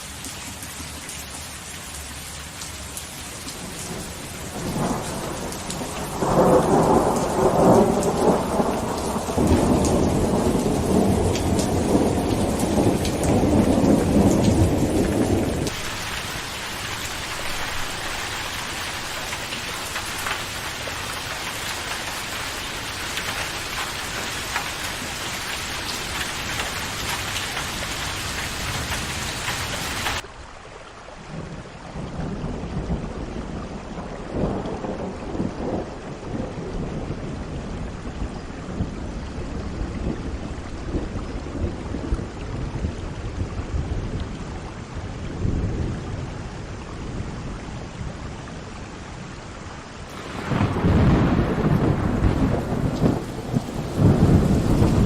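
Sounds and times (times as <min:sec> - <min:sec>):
steady rain: 0:00.0 - 0:55.0
rolling thunder: 0:03.8 - 0:21.2, 0:50.1 - 0:55.0.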